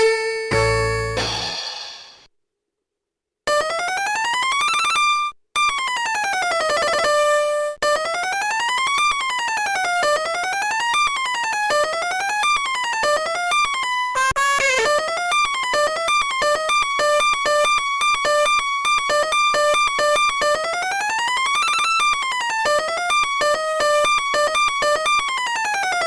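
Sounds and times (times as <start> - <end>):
toy keyboard electronic melody: 14.1 - 26.0.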